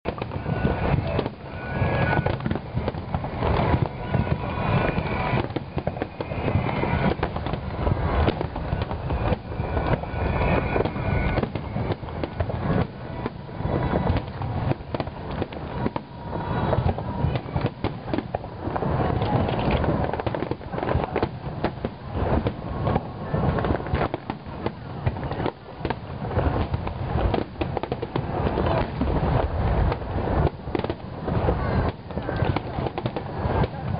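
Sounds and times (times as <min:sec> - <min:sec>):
fireworks bangs and crackling: 0:00.0 - 0:33.9.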